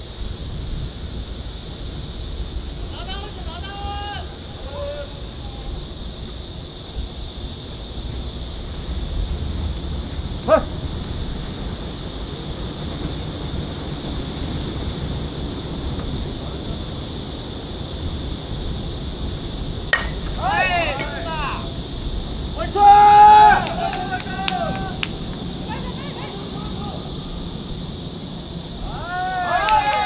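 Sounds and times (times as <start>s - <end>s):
wind on microphone rumble: 4.2s - 22.7s.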